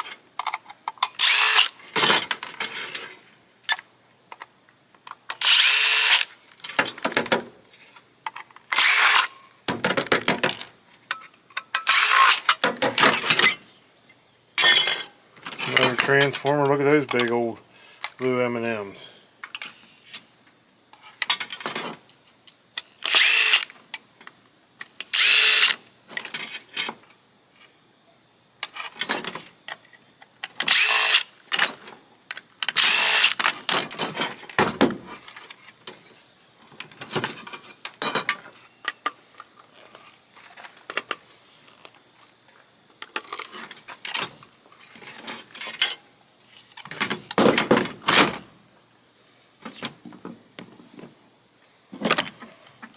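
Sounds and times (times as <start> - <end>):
clatter of screws and metal parts: 0.0 - 7.4, 8.2 - 13.7, 14.6 - 18.2, 21.0 - 22.0, 22.8 - 23.8, 25.0 - 26.9, 28.6 - 41.9, 43.0 - 46.0
cordless drill running: 1.2 - 1.7, 5.4 - 6.2, 8.8 - 9.3, 11.9 - 12.4, 23.1 - 23.7, 25.2 - 25.8, 30.7 - 31.2, 32.8 - 33.4.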